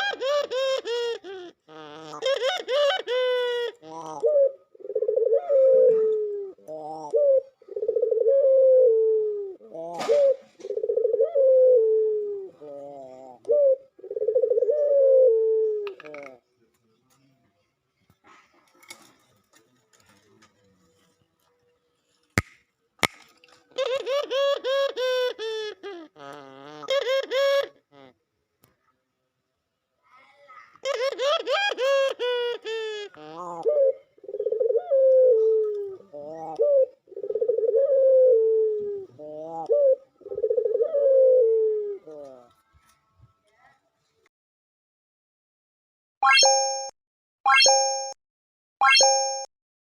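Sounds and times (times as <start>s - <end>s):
bird laughing call: 0.0s - 4.4s
dove cooing: 0.0s - 16.4s, 23.8s - 28.1s, 30.8s - 42.5s.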